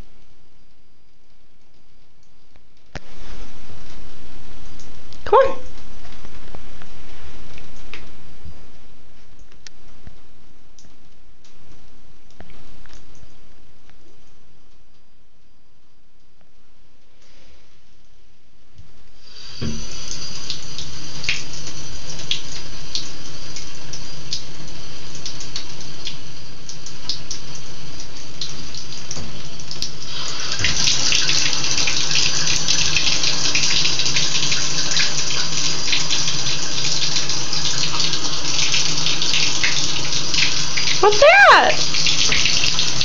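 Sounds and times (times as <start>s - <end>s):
bathtub faucet running: 18.8s - 43.0s.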